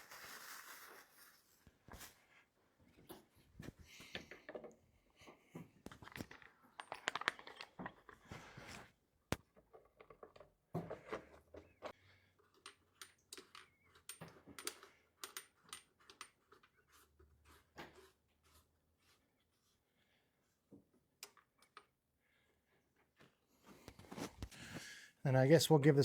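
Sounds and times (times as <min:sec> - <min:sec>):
clicks and taps handling engine parts: 0:03.0 - 0:08.2, 0:09.3 - 0:16.7.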